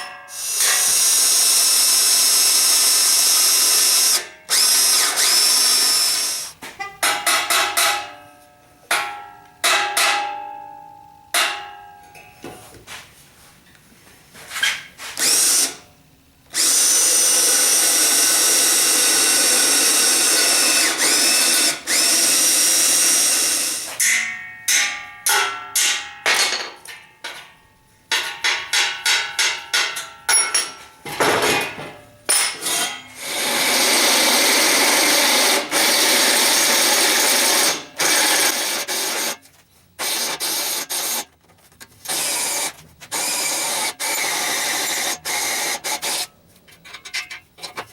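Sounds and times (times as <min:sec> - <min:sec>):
electric drill boring steel: 0:00.0 - 0:06.5, 0:15.2 - 0:15.8, 0:16.5 - 0:24.0, 0:32.6 - 0:39.4, 0:40.0 - 0:41.2, 0:42.1 - 0:46.3.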